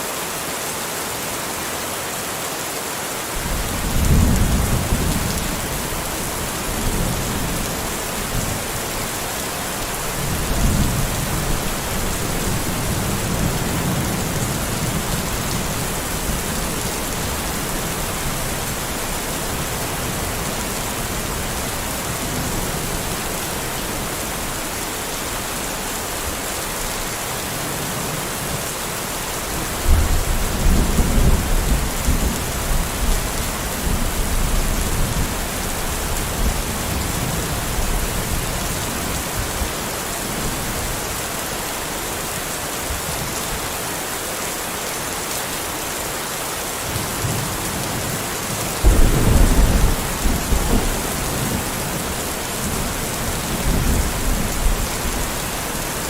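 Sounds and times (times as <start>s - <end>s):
steady rain: 0.0s - 56.0s
thunder clap: 48.8s - 52.9s
thunder rumbling: 48.8s - 56.0s.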